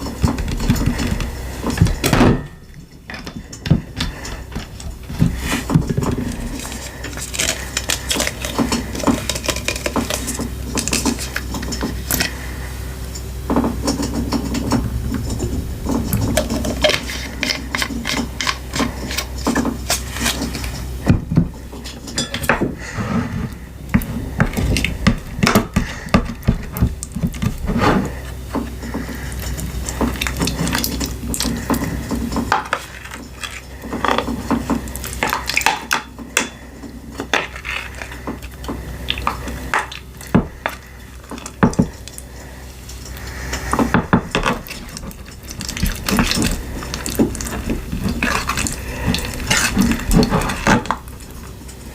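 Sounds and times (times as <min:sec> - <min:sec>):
slime squishing and crackling: 0:03.8 - 0:12.4, 0:23.9 - 0:51.9.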